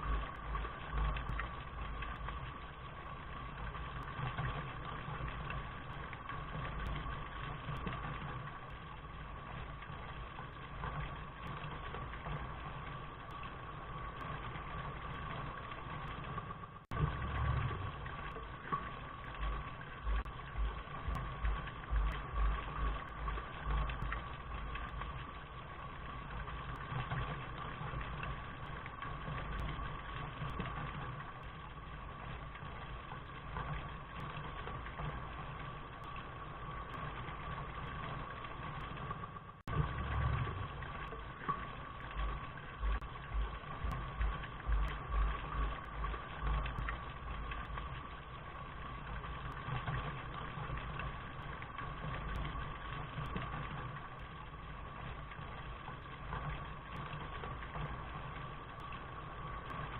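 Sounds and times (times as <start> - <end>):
steady rain hiss: 0.0 - 59.9
uneven low rumble: 0.0 - 59.9.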